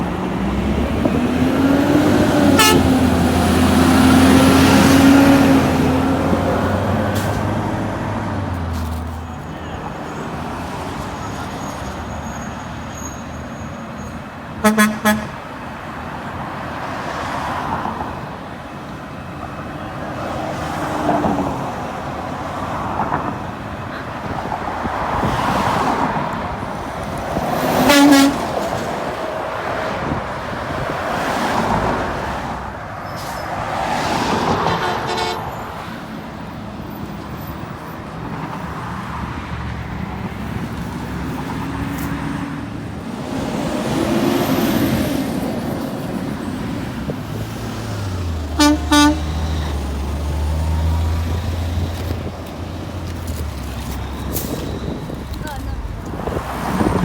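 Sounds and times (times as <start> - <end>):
garbage trucks driving past: 0.0 - 57.0
truck horn honks: 2.4 - 4.8, 14.6 - 15.5, 27.8 - 28.5, 34.5 - 35.8, 48.5 - 49.7.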